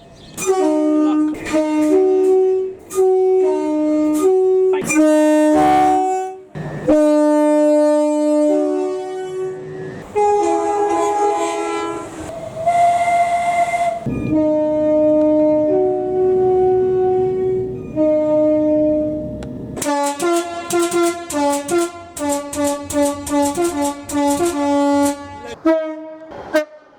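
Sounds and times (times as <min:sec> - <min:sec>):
train air horn playing tune: 0:00.4 - 0:26.9.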